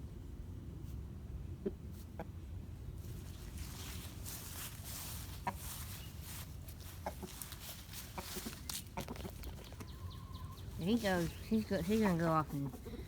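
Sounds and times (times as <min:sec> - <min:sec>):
rustling: 0:03.0 - 0:13.0
chickens clucking: 0:03.4 - 0:13.0.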